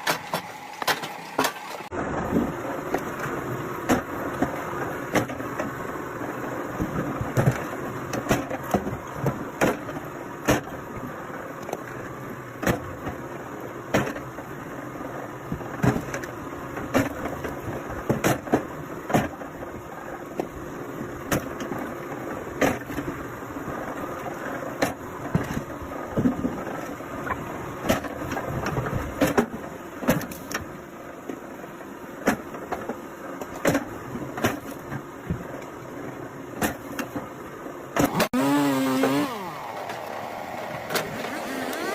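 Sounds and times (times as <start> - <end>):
wood splitter engine running: 38.0 - 41.9.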